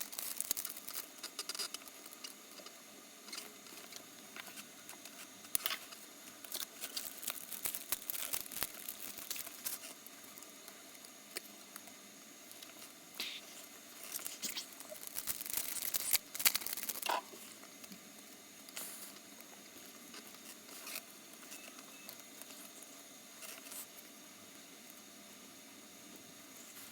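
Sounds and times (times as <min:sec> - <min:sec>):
packaging rustling and crinkling: 0:00.0 - 0:02.3, 0:03.7 - 0:10.0, 0:13.5 - 0:17.1.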